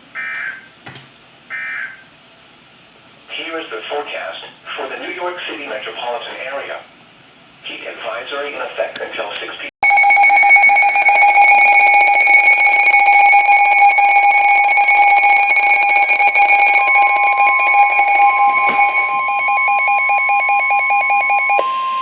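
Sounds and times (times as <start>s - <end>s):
pulsing electronic alert tone: 9.8s - 22.0s
second steady tone: 9.8s - 22.0s.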